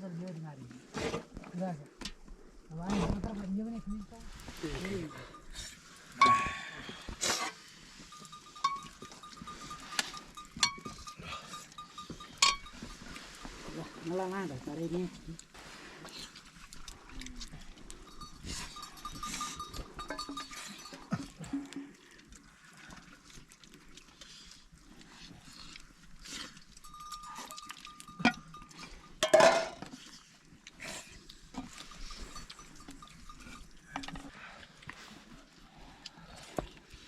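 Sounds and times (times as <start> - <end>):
animal bells clinking: 3.3 - 6.6, 7.9 - 15.1, 16.8 - 21.8, 26.3 - 29.8, 31.6 - 34.5.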